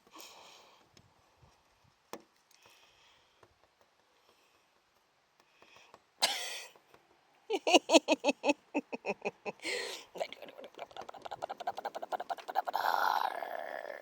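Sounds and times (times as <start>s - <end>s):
person laughing hard: 7.5s - 13.4s
sharp gasping breath: 9.6s - 10.2s.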